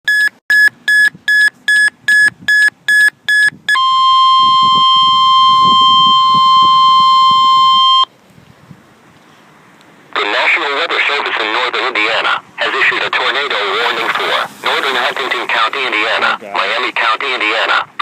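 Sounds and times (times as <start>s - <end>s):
short alert beeps: 0.1s - 8.1s
faint hiss: 13.6s - 16.6s.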